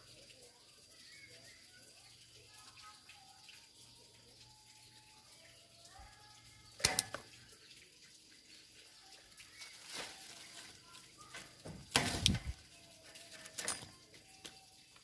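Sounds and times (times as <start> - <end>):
sharp clicks and snaps: 6.8 - 7.4.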